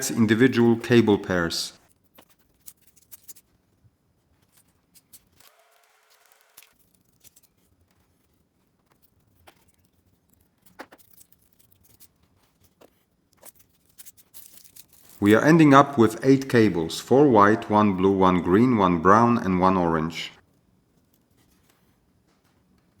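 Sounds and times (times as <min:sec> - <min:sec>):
foil crinkling and clicking: 0:04.4 - 0:15.2.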